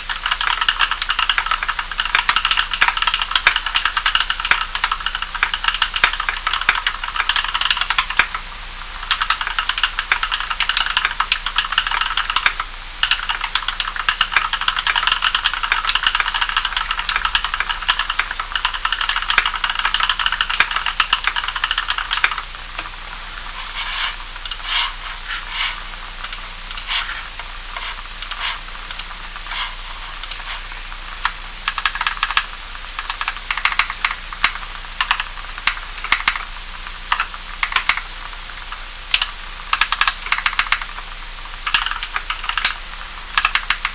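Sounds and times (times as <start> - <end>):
typing on a mechanical keyboard: 0.0 - 8.3, 9.0 - 22.9, 27.8 - 30.6, 31.2 - 36.5, 37.1 - 38.1, 38.7 - 41.0, 41.6 - 42.8, 43.4 - 43.9.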